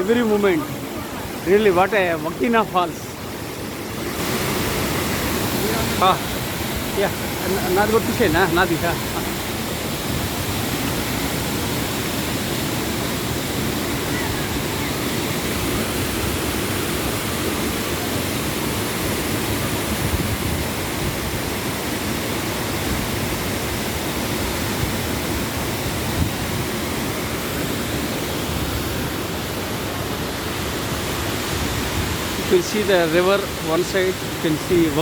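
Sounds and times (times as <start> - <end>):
waterfall rushing: 0.0 - 35.0.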